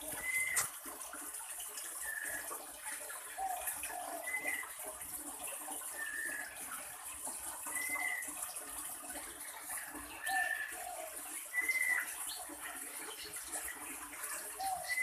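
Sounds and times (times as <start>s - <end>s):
bird whistled notes: 0.2s - 0.6s.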